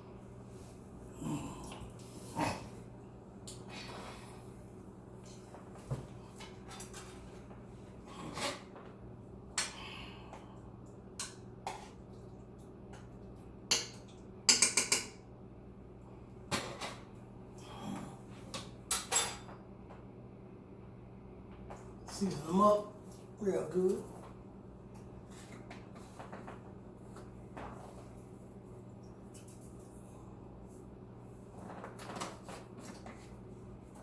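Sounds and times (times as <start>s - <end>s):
steady low hum: 0.0s - 34.0s
cookware and utensils clattering: 13.7s - 15.2s, 18.6s - 19.6s.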